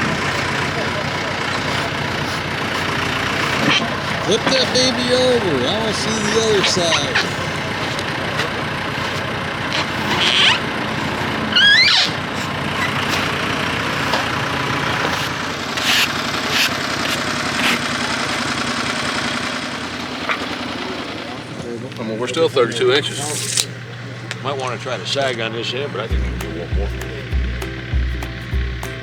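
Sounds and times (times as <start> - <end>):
engine idling: 0.0 - 29.0
rising squeal: 9.8 - 13.2.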